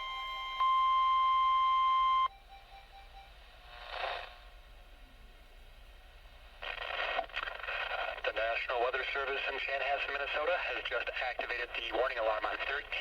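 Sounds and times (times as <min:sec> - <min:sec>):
steady alarm beep: 0:00.0 - 0:03.4.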